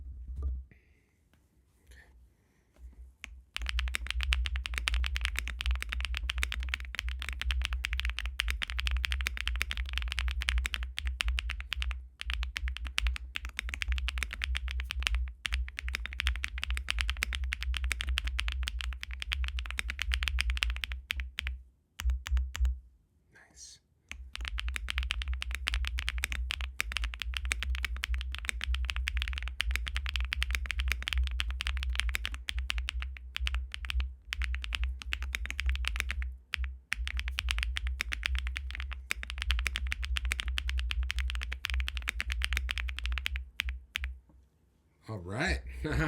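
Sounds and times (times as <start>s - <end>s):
mechanical keyboard typing: 3.6s - 22.7s, 24.1s - 44.1s.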